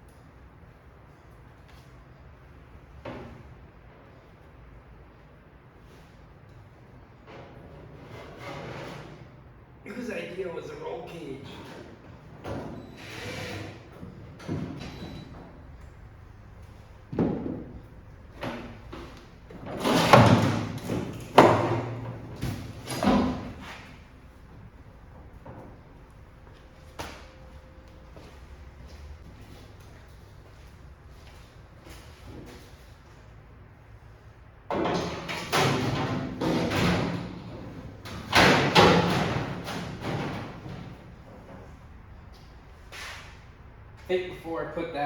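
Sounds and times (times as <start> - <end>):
knocks and bangs of parts: 17.1 - 23.7, 34.7 - 41.6.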